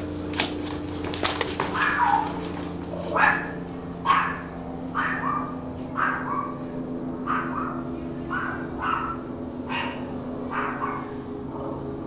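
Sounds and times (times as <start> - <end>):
dog barking: 1.7 - 6.6, 7.2 - 11.8.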